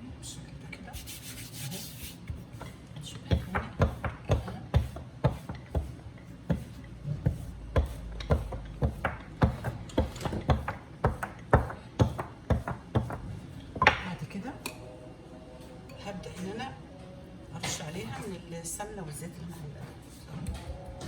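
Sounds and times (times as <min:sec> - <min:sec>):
rolling pin knocking on wooden board: 0:03.3 - 0:14.0.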